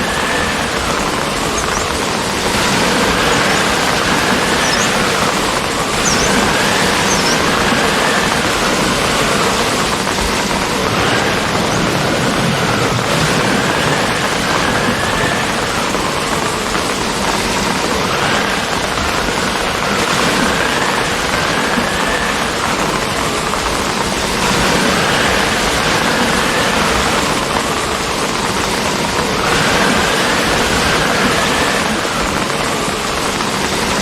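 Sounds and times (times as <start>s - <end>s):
steady rain falling: 0.0s - 34.0s.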